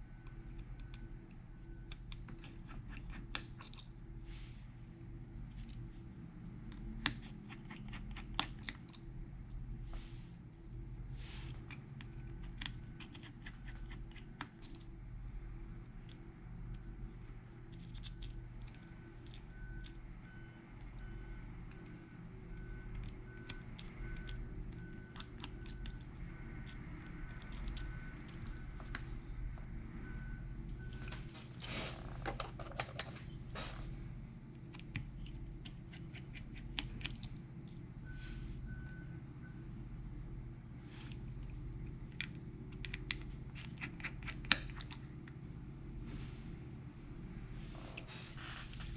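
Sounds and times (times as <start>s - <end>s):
low electrical hum: 0.0s - 48.9s
tools clicking and tapping: 0.2s - 3.9s, 32.2s - 33.4s, 34.7s - 37.8s
faint repeating beep: 18.9s - 25.2s, 29.9s - 31.2s, 38.0s - 39.8s.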